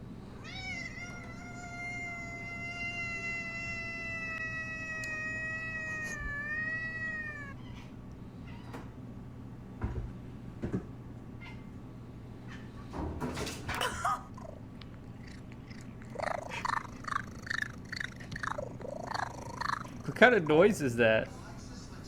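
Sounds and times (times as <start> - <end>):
cat yowling: 0.3 - 7.9, 13.8 - 21.3.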